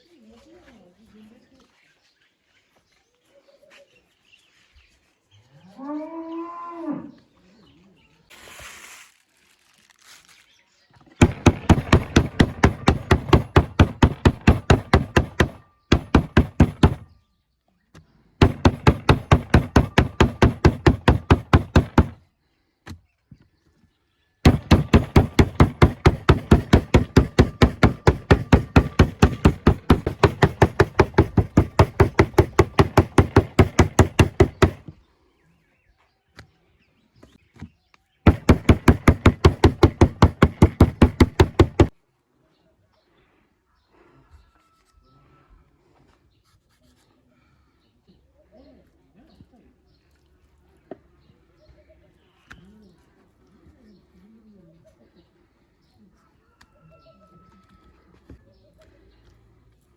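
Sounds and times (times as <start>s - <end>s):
knife chopping on cutting board: 11.2s - 17.0s, 18.4s - 22.1s, 24.5s - 34.8s.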